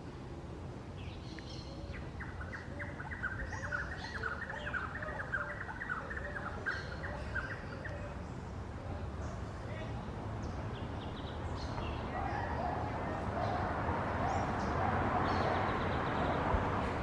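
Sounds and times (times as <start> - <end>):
bird chattering song: 1.0 - 8.5.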